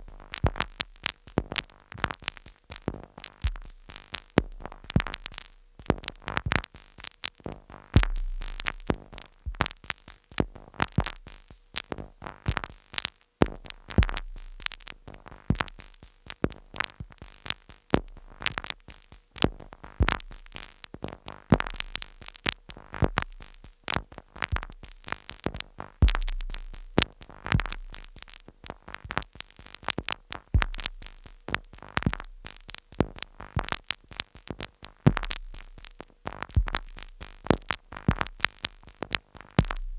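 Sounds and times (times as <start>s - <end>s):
glitchy clicks and percussive hits: 23.9s - 39.9s.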